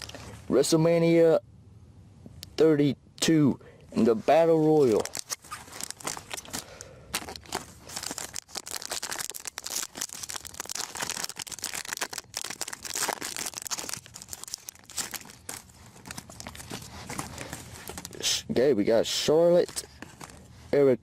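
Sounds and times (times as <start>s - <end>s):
plastic wrapper crinkling: 4.7s - 18.3s, 19.2s - 20.5s.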